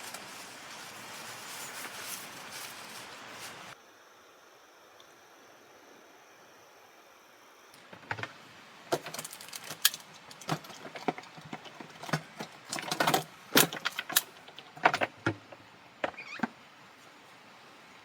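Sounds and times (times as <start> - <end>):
clinks of hard objects: 8.9 - 15.1.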